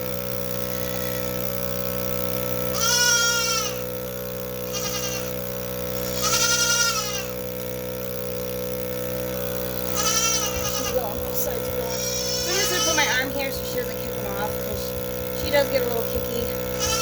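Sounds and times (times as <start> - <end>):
goat kids bleating: 0.6 - 1.5, 2.6 - 7.6, 9.3 - 17.0
milking machine motor hum: 3.6 - 17.0.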